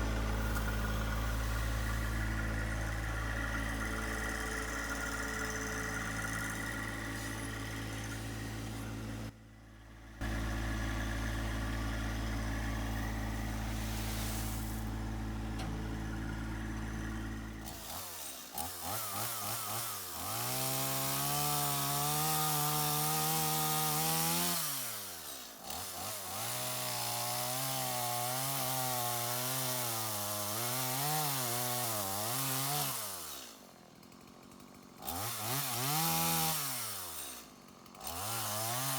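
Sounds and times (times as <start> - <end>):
chainsaw revving and cutting: 0.0 - 9.4, 10.1 - 15.4, 16.1 - 38.9
tractor diesel idling: 0.0 - 18.2.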